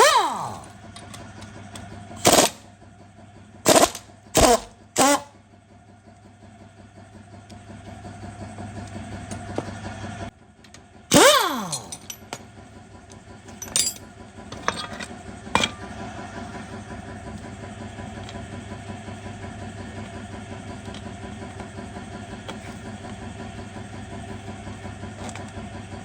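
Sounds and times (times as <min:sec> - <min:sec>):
power tool bursts: 0:02.2 - 0:02.6, 0:03.7 - 0:05.3, 0:11.1 - 0:12.2.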